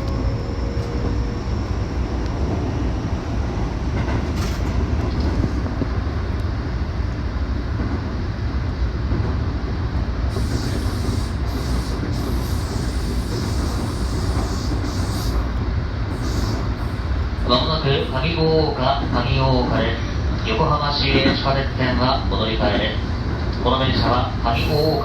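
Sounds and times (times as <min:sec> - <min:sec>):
train wheels rumbling: 0:00.0 - 0:25.0
high hiss bursts: 0:10.3 - 0:15.5.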